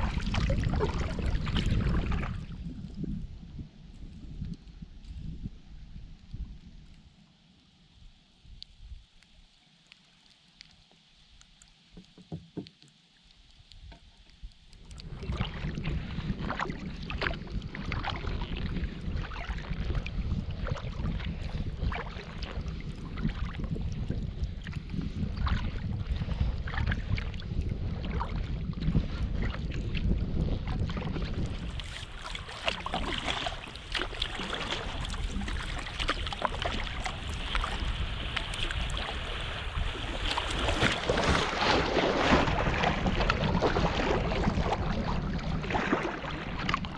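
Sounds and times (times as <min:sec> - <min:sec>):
water splashing around kayak: 0:00.0 - 0:07.2, 0:07.9 - 0:46.9
wind rumbling on microphone: 0:00.0 - 0:09.5, 0:13.5 - 0:46.9.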